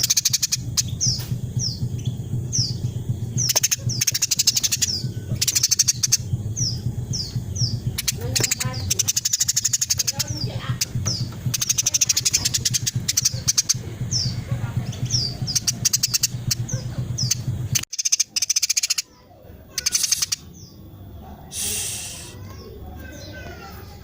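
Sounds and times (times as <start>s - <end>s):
sparrow chattering and chirping: 0.0s - 24.0s
steady low hum: 0.0s - 24.0s.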